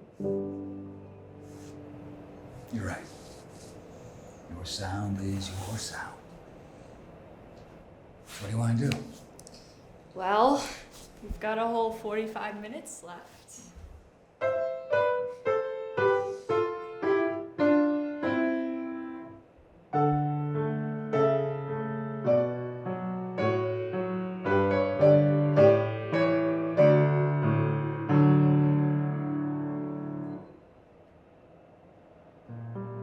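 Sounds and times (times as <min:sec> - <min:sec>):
piano playing: 0:00.0 - 0:05.8, 0:14.4 - 0:30.5, 0:32.5 - 0:33.0.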